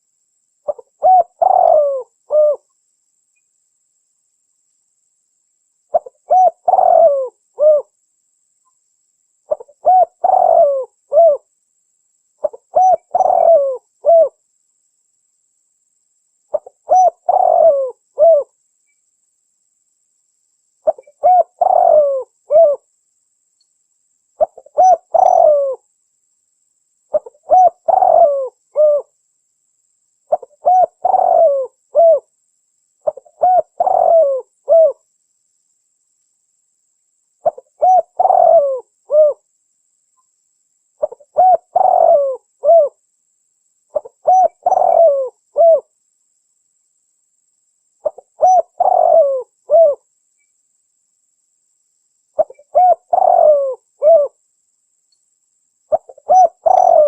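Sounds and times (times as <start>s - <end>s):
dove cooing: 0.7s - 2.6s, 5.9s - 7.9s, 9.5s - 11.5s, 12.4s - 14.4s, 16.5s - 18.5s, 20.8s - 22.8s, 24.4s - 25.8s, 27.1s - 29.1s, 30.3s - 32.3s, 33.0s - 35.0s, 37.4s - 39.4s, 41.0s - 43.0s, 43.9s - 45.9s, 48.0s - 50.0s, 52.4s - 54.4s, 55.9s - 57.0s.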